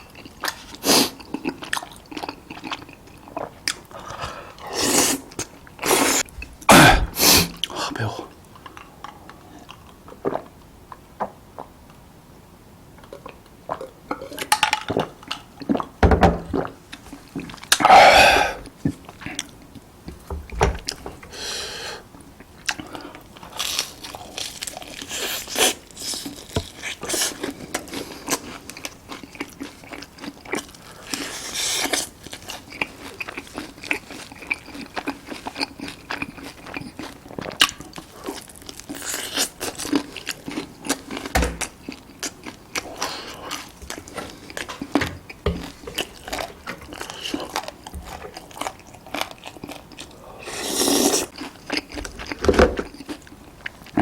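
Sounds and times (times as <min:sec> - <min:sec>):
crunchy chewing: 0:22.4 - 0:54.0.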